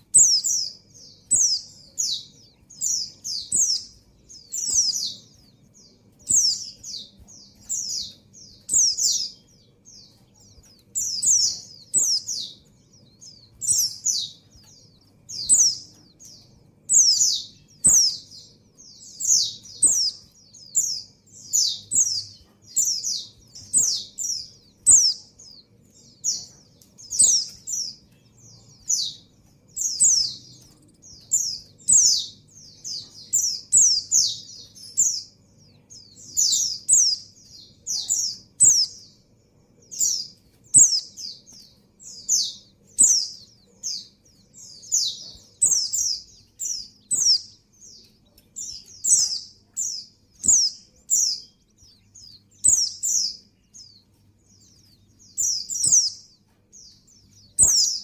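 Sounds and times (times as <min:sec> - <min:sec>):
bird high thin chirps: 0:10.1 - 0:35.4, 0:39.9 - 0:58.0.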